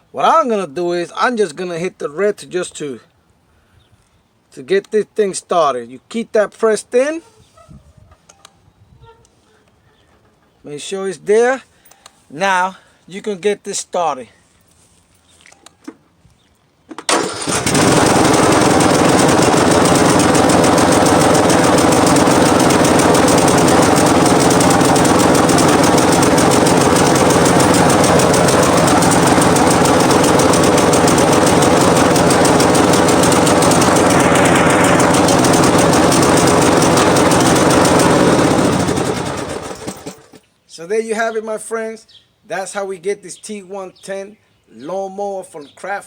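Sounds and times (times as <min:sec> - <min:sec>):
lawn tractor engine running: 0:17.1 - 0:40.4.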